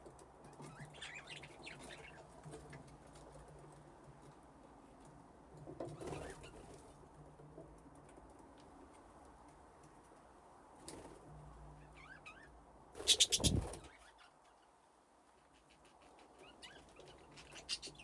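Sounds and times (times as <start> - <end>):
budgies calling: 13.0 - 14.3.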